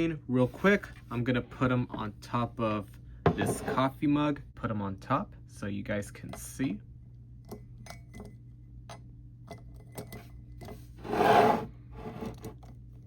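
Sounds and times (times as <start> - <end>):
plastic scraping ceramic mug: 11.0 - 12.6.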